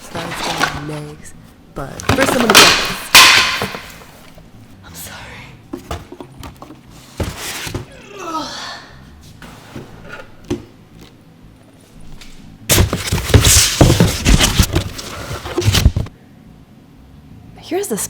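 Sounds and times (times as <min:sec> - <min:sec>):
packaging knocks and rustling: 0:12.7 - 0:16.1.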